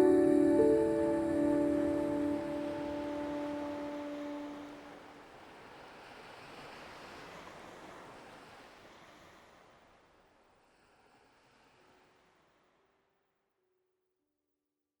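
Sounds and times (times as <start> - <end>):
held musical tones: 0.0 - 4.8
ocean surf washing: 0.0 - 5.0.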